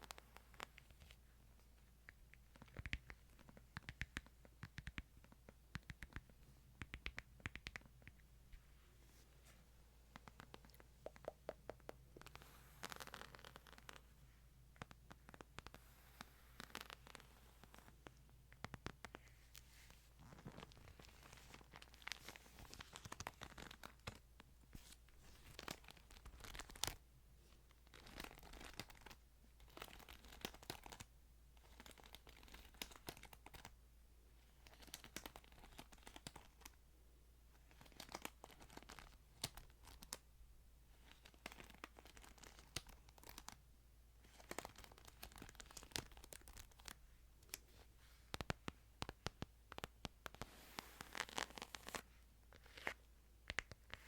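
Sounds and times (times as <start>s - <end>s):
thin pages crinkling and rustling: 49.2s - 52.0s.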